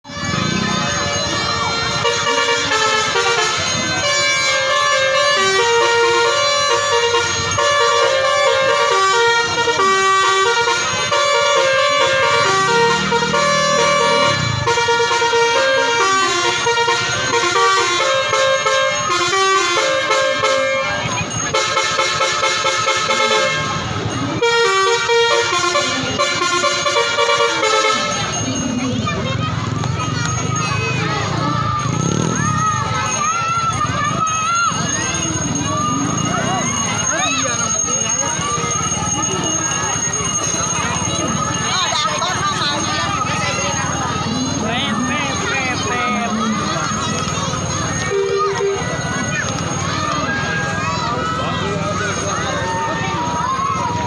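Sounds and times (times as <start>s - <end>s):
multi-tone air horn melody: 0.1s - 28.4s, 48.0s - 49.0s.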